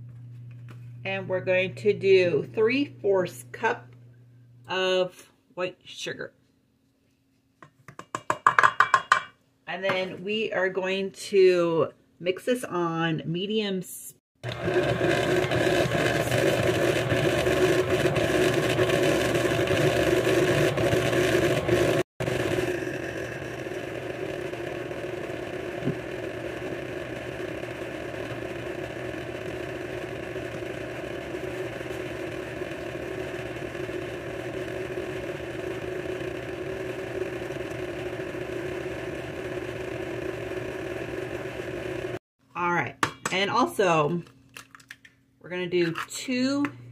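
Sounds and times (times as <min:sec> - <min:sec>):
electric mixer motor humming: 0:14.4 - 0:42.2.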